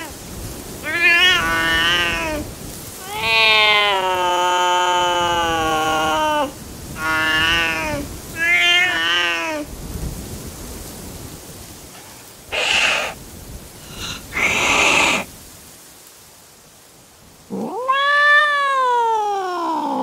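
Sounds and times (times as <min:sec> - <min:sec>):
cat hissing: 0:00.8 - 0:04.0, 0:07.0 - 0:09.7, 0:11.9 - 0:13.2, 0:13.8 - 0:15.3
cat yowling: 0:00.8 - 0:09.7, 0:12.5 - 0:13.2, 0:13.9 - 0:15.3, 0:17.5 - 0:20.0.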